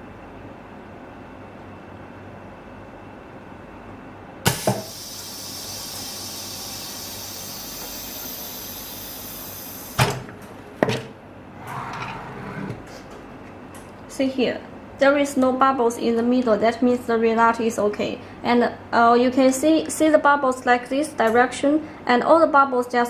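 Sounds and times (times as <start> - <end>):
air hissing out: 4.6 - 10.0.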